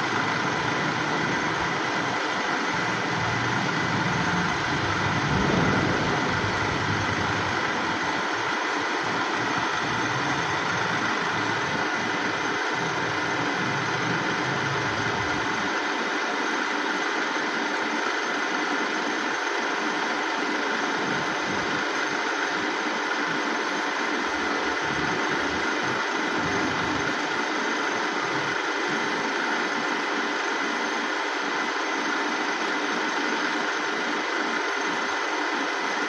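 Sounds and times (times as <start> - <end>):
milling machine running: 0.0 - 36.0
low rumble: 3.1 - 11.5.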